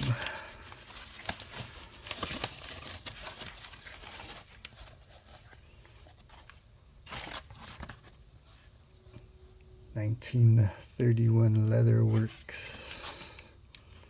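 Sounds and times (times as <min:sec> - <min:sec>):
foam packaging rustling and crinkling: 0:00.0 - 0:08.7.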